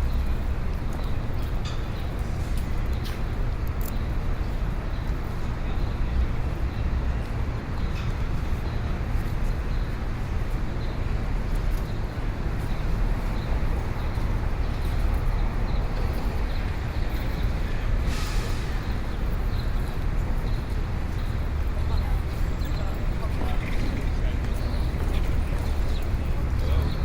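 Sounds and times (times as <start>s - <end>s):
traffic rumble: 0.0s - 27.0s
short hiss: 18.1s - 18.8s.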